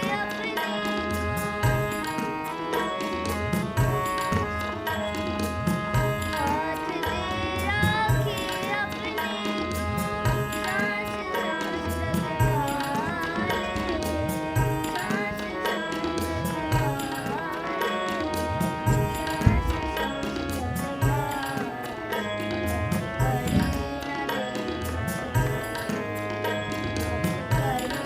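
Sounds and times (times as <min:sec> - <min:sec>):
devotional singing: 0:00.0 - 0:28.0
tabla strokes: 0:00.0 - 0:28.0.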